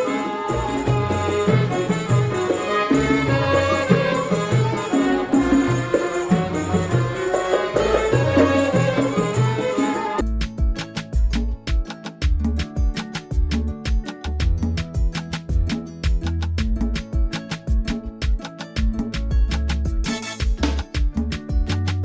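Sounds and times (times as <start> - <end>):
folk music: 0.0 - 10.2.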